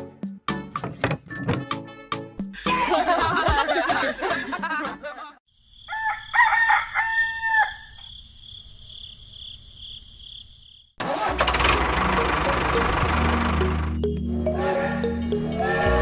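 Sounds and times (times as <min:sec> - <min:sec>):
rooster crowing: 0:05.8 - 0:08.0.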